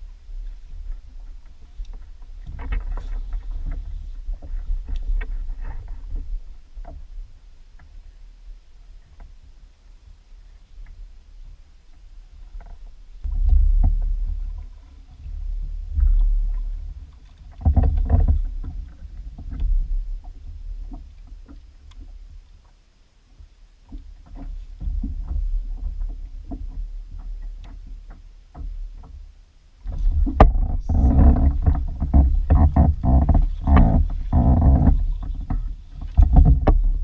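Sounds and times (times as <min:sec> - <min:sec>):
small knocks and clicks: 0:23.4 - 0:29.2, 0:29.8 - 0:37.0.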